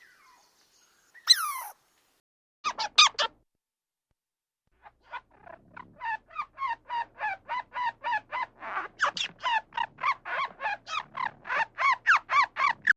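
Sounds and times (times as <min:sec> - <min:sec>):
animal giving short harsh calls: 0:01.3 - 0:01.7.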